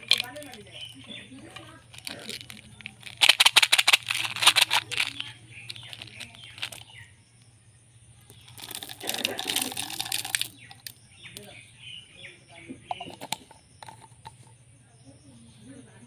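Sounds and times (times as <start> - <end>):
candy wrappers crinkling: 0.0 - 7.0, 8.3 - 11.0.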